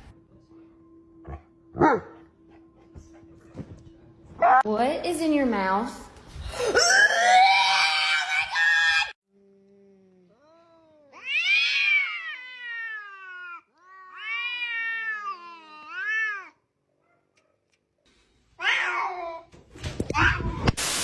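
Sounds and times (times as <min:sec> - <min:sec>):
cat meowing: 0:10.4 - 0:16.6.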